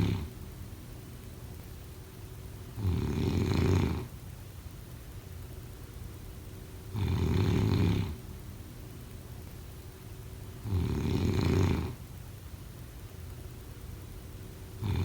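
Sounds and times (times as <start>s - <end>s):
person snoring: 0.0s - 0.3s, 7.0s - 8.2s.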